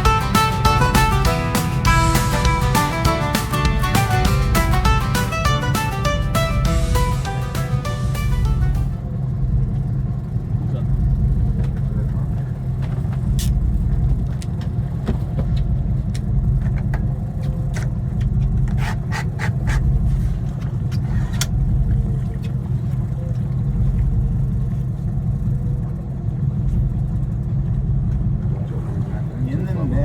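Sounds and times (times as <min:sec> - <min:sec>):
boat engine droning: 0:00.0 - 0:15.0, 0:21.6 - 0:26.6.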